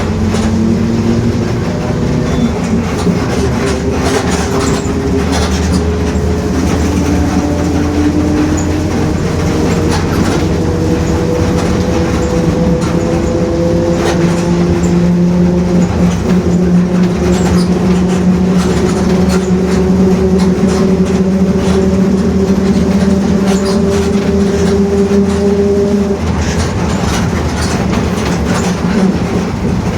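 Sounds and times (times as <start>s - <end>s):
bus engine droning whine: 0.0s - 29.9s
knocks and rattles: 0.0s - 29.9s.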